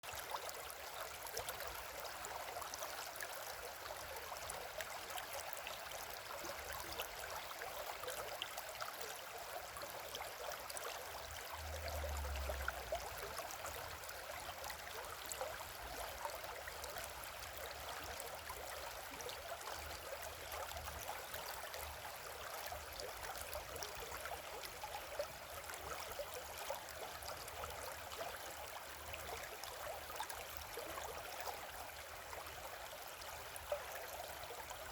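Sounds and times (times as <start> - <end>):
river water flowing over stones: 0.0 - 34.9.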